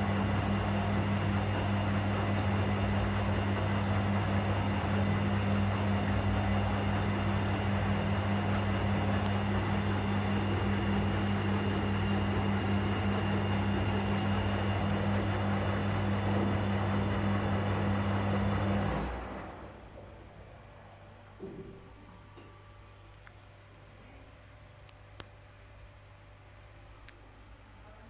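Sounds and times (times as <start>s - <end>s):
washing machine humming: 0.0s - 22.8s.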